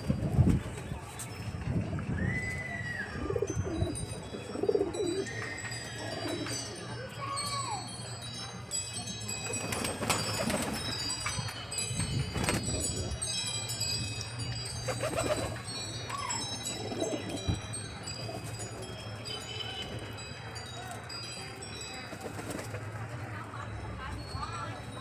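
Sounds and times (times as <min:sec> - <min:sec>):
high tinkling chimes: 0:00.3 - 0:25.0
pigeons cooing: 0:03.2 - 0:06.5, 0:14.9 - 0:17.6.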